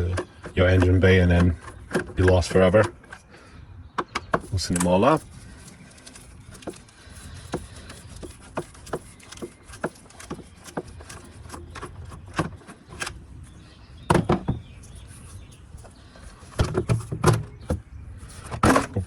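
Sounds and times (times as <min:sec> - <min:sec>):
screwdriver turning screws: 0:04.0 - 0:13.3
plastic knocks: 0:14.1 - 0:14.6, 0:16.6 - 0:17.8.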